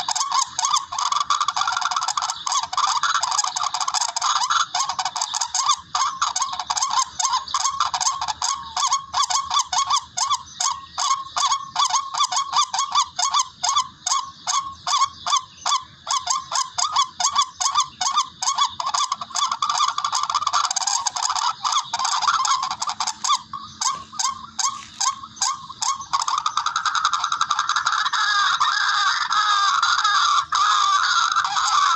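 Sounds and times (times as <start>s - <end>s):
harsh honking bird call: 17.7s - 27.2s.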